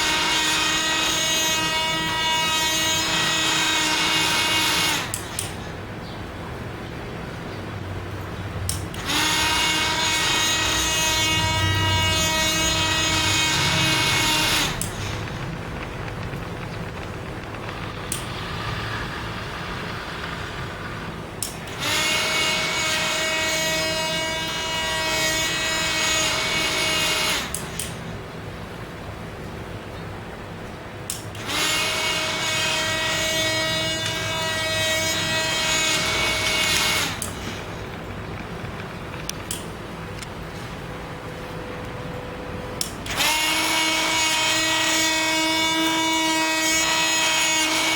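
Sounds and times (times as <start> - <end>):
electric drill motor running: 0.0 - 5.7, 8.9 - 28.0, 31.4 - 38.0, 42.8 - 47.9.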